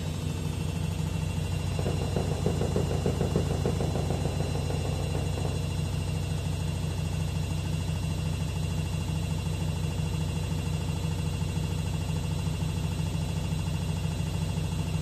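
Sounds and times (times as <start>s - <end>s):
washing machine spinning: 1.5s - 7.2s
higher clatter: 1.6s - 6.3s.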